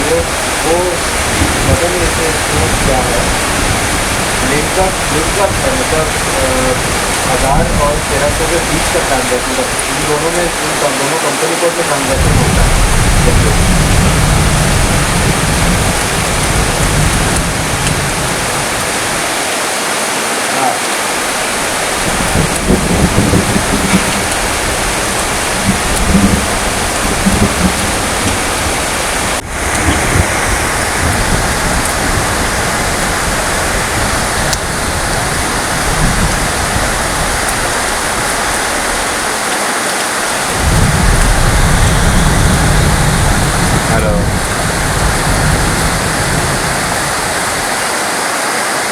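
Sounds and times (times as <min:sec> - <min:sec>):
heavy rain falling: 0:00.0 - 0:48.9
low rumble: 0:21.7 - 0:39.1, 0:40.5 - 0:47.7.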